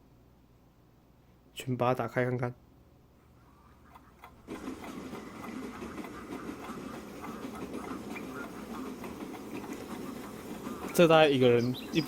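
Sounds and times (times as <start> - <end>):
birdsong: 3.1 - 12.0
train: 4.5 - 12.0.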